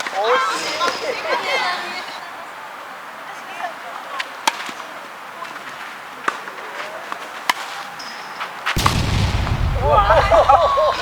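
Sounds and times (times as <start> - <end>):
deep boom sound effect: 8.8 - 11.0.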